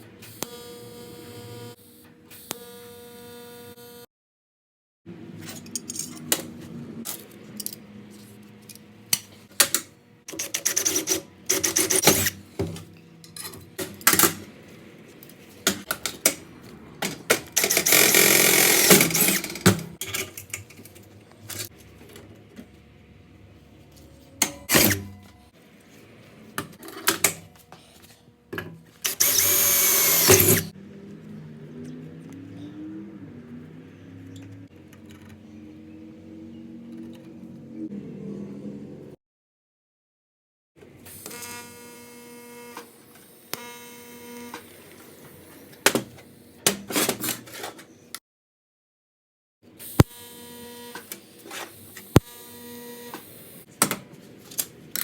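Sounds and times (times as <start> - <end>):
metal parts clicking and knocking: 5.4 - 6.5
power tool motor spinning: 17.6 - 19.7, 29.1 - 30.7.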